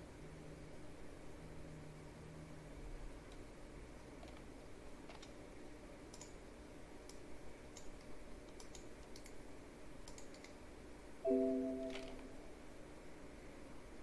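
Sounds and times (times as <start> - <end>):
computer keyboard and mouse clicks: 4.2 - 5.4, 6.1 - 6.4, 7.0 - 9.4, 10.0 - 10.6
short pitched chime: 11.3 - 12.5.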